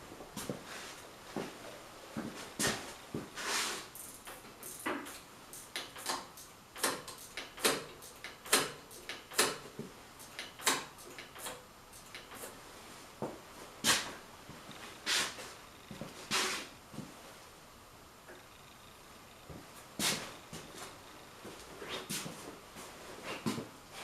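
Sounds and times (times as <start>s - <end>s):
hand tools clicking and knocking: 4.2s - 12.5s.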